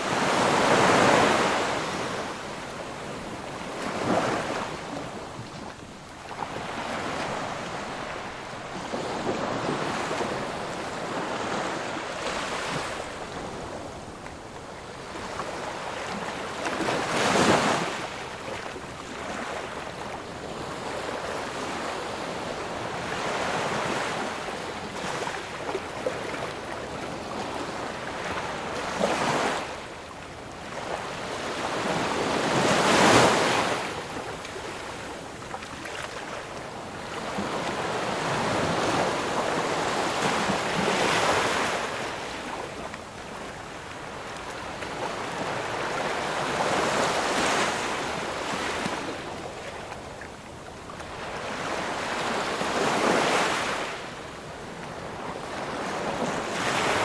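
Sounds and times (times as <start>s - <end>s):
ocean waves breaking: 0.0s - 14.4s, 30.6s - 50.2s.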